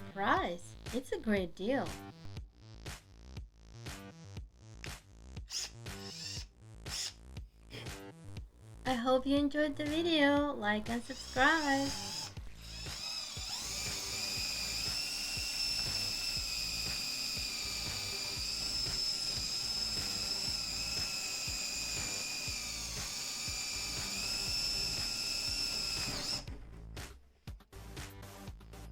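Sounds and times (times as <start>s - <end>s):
background music with steady beat: 0.0s - 28.9s
cordless drill motor whining: 5.5s - 7.2s, 10.8s - 26.7s.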